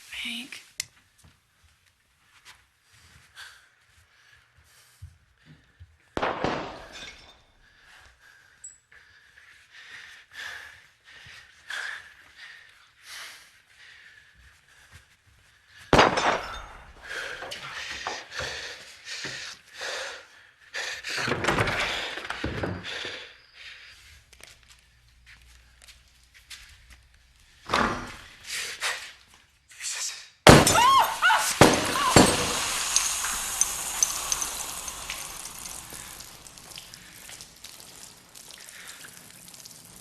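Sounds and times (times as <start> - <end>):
bottles bursting with breaking glass: 6.2 - 7.6, 16.0 - 17.1, 30.5 - 38.3.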